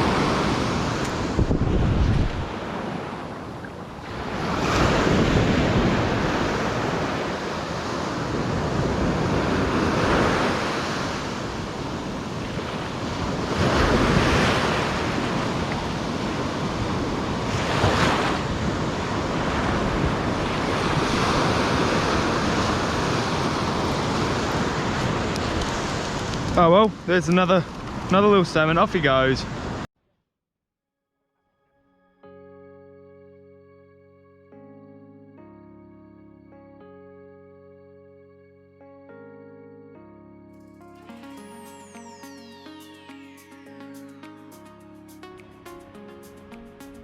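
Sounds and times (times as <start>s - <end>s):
wind buffeting microphone: 0.0s - 10.2s, 11.2s - 28.2s
surf breaking on beach: 0.0s - 29.8s.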